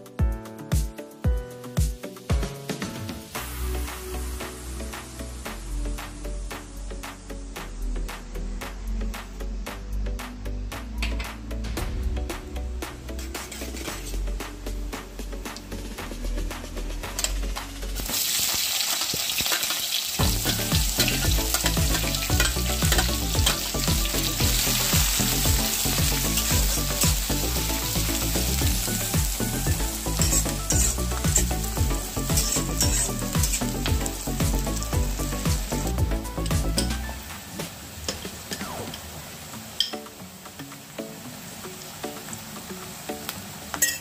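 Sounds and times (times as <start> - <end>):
food sizzling in hot oil: 2.1 - 7.5, 13.1 - 14.4, 17.2 - 44.0.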